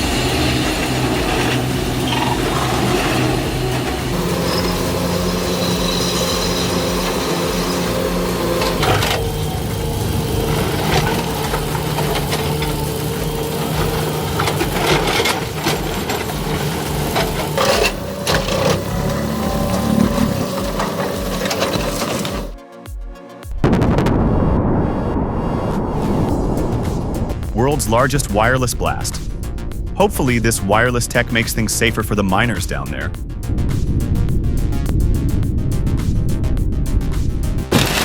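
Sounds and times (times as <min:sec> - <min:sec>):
heavy machine engine running: 0:00.0 - 0:22.6, 0:26.3 - 0:38.0
material cracking and breaking: 0:37.7 - 0:38.0.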